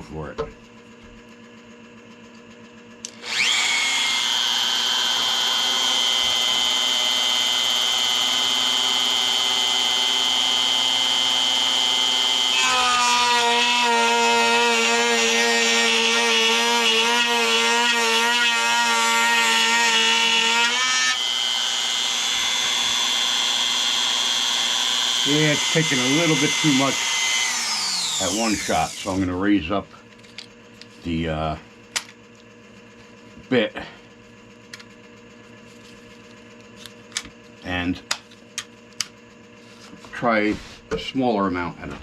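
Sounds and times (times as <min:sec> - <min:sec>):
router whining: 0:03.0 - 0:31.2
router cutting into wood: 0:03.1 - 0:29.3.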